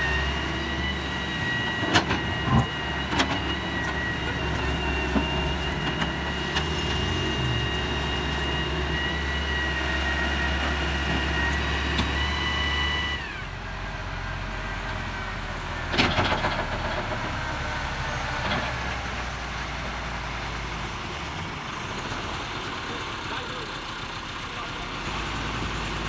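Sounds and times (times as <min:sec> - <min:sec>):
diesel engine running: 0:00.0 - 0:26.0.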